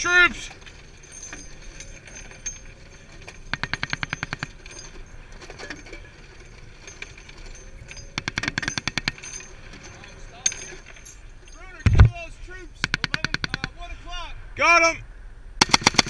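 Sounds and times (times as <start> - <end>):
machine-gun fire: 15.6 - 16.0.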